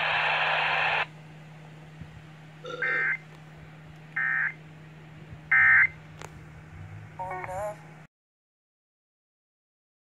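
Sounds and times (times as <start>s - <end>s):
faint steady hum: 0.0s - 8.1s.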